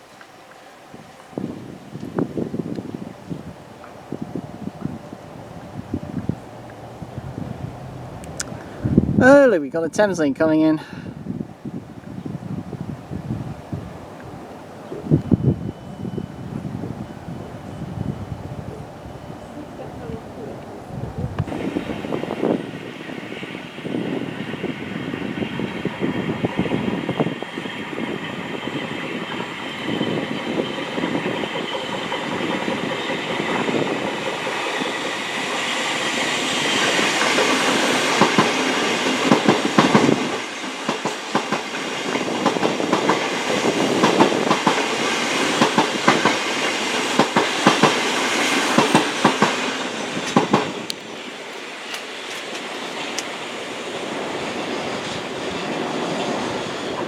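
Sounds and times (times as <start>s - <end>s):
train wheels clicking over rail joints: 21.4s - 57.0s.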